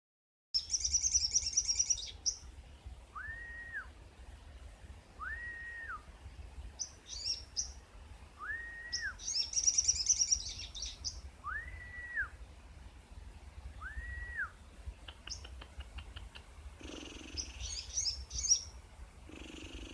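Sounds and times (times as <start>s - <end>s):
bird whistling: 0.6s - 2.4s, 3.2s - 3.9s, 5.2s - 6.0s, 8.4s - 12.4s, 13.8s - 14.6s, 16.9s - 18.7s
bird chattering trills: 9.2s - 11.2s, 15.1s - 18.7s, 19.3s - 19.9s.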